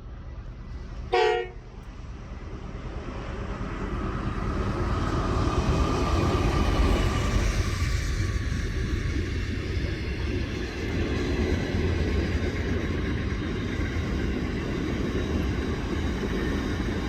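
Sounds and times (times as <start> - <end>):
train rumble: 0.0 - 17.0
train horn toot: 1.1 - 1.7.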